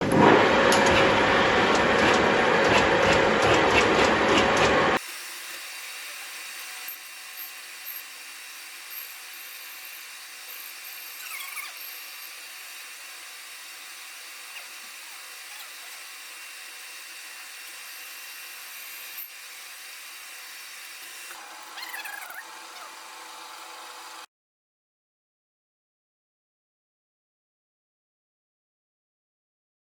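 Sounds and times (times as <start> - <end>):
metal lathe humming: 0.1 - 21.8, 22.4 - 24.3
cutting tool squealing: 5.0 - 24.2.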